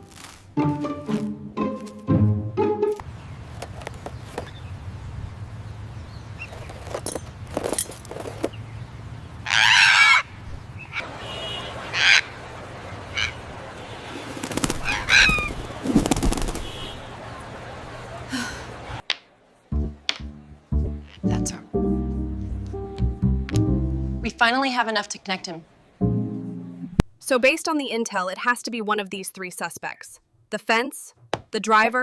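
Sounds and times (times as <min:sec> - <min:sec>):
parrot squawking: 0:09.5 - 0:11.1, 0:11.8 - 0:12.4, 0:13.1 - 0:13.4, 0:14.8 - 0:15.6.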